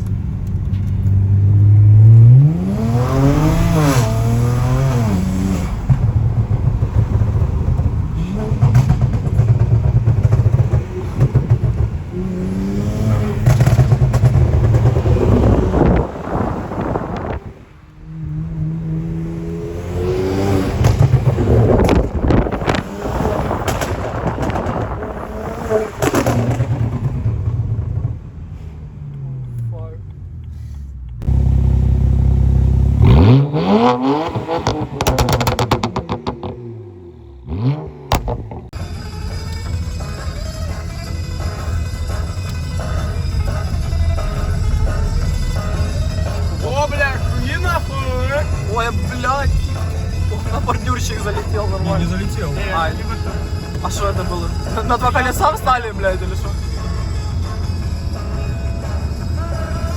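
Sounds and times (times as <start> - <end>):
car engine revving: 0.0 - 59.9
exhaust pops and bangs: 5.6 - 12.2, 13.2 - 17.5, 20.6 - 28.5, 34.3 - 36.6, 38.1 - 38.8.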